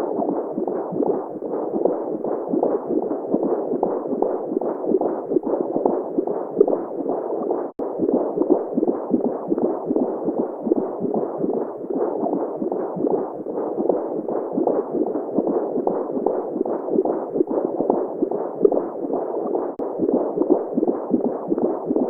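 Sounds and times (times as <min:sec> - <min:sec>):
muffled whooshing heartbeat: 0:00.0 - 0:22.0.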